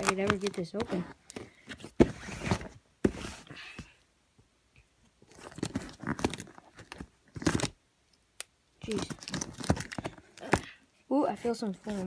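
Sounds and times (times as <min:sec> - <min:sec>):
packaging crunching and tearing: 0:00.0 - 0:00.7.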